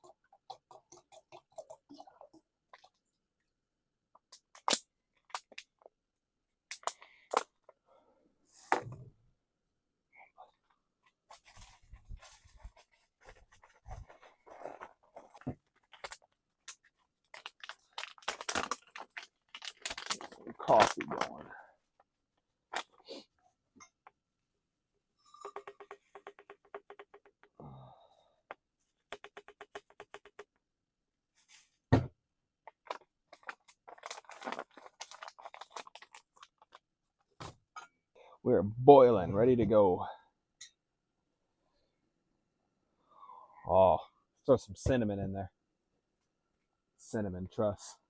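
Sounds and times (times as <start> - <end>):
crinkling and rustling: 11.0 - 23.1, 32.6 - 37.7.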